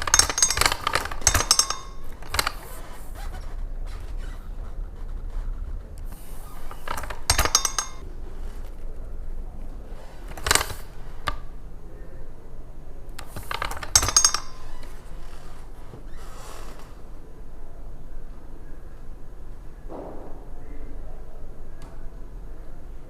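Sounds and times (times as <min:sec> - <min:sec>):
letterpress metallic clanking: 0:00.0 - 0:03.2, 0:06.0 - 0:08.1, 0:10.0 - 0:11.8, 0:13.0 - 0:15.3.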